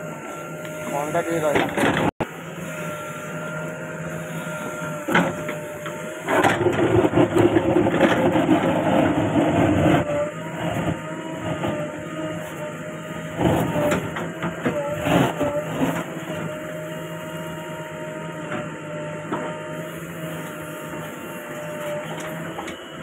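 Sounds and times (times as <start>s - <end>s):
backhoe diesel engine running: 0.0s - 23.0s.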